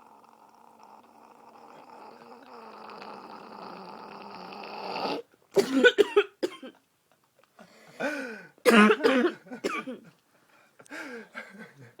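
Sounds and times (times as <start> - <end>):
woman coughing: 5.6 - 6.8, 8.6 - 10.1.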